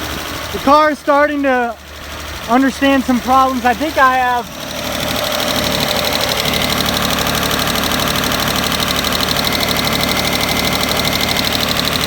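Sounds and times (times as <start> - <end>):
car engine idling loudly: 0.0 - 12.0.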